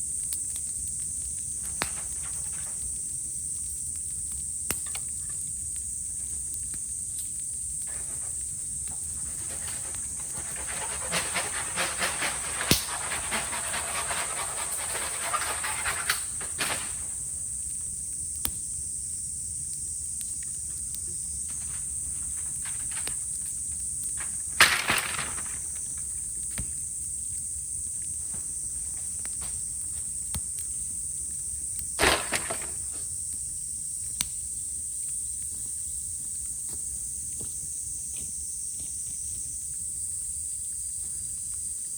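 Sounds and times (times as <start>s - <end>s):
bamboo fire crackling and hissing: 0.0s - 41.9s
high cicada drone: 0.0s - 41.9s
sharp pops of bursting bamboo: 0.7s - 3.0s, 4.2s - 5.3s, 6.6s - 17.7s, 20.6s - 27.0s, 31.7s - 33.5s.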